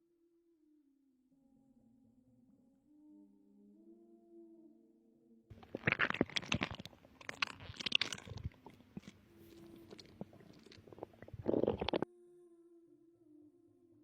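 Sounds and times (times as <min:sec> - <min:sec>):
stomach gurgling: 0:05.5 - 0:12.1.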